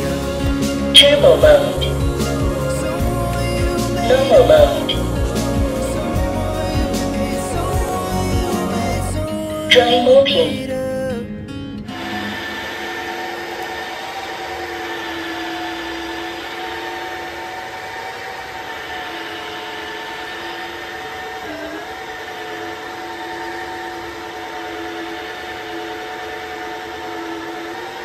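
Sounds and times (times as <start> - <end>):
airflow hiss: 0.0 - 9.3
vacuum motor whine: 0.0 - 9.4, 11.9 - 28.0.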